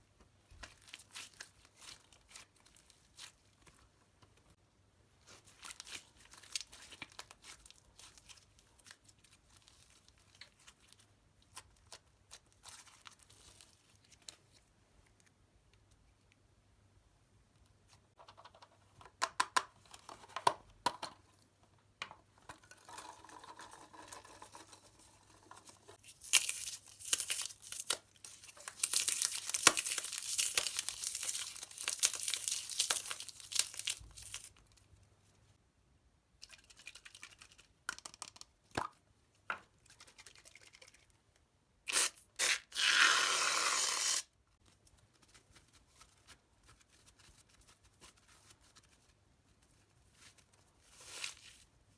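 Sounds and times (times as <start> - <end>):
packaging tearing and crinkling: 26.0 - 34.6, 41.9 - 44.3.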